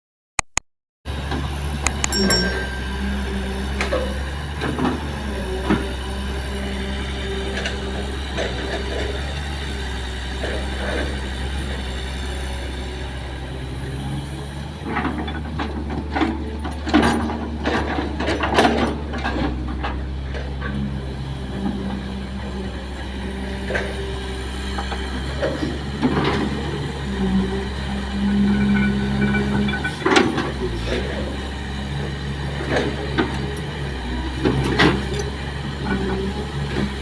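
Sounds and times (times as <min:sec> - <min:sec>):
excavator diesel engine running: 0:01.1 - 0:37.0.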